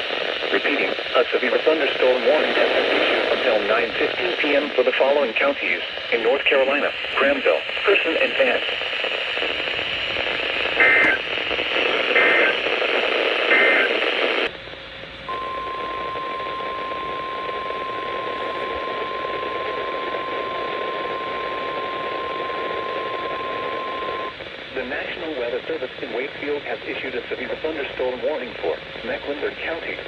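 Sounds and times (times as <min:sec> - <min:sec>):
radio static hiss: 0:00.0 - 0:30.0
steady alarm tone: 0:15.3 - 0:24.3.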